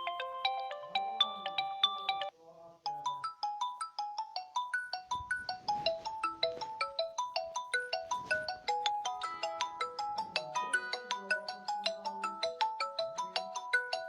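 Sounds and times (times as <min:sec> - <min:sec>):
phone ringtone melody: 0:00.0 - 0:02.3, 0:02.9 - 0:14.0.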